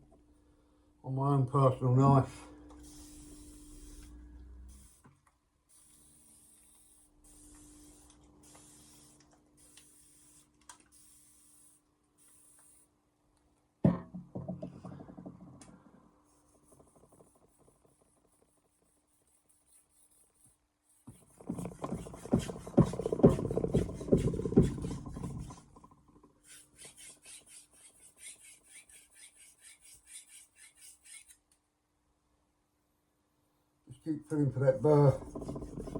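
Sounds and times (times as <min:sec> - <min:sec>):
knife scraping on whetstone: 0:26.5 - 0:31.4.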